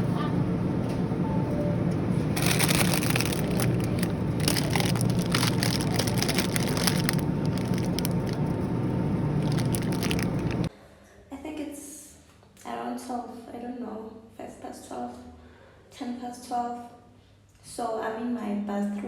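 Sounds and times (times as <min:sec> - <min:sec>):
steady low hum: 0:00.0 - 0:10.7
dense crackling and clicking: 0:02.4 - 0:10.7.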